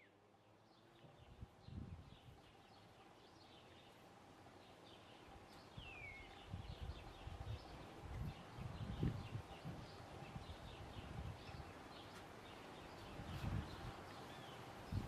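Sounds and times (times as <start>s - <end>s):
faint bird chirps: 4.7s - 15.0s.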